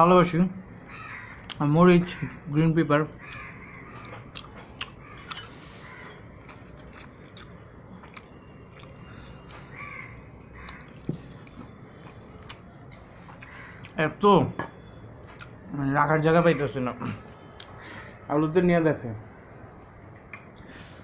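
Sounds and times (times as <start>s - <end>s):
person chewing food: 3.2s - 14.0s, 14.6s - 15.6s, 17.4s - 17.8s.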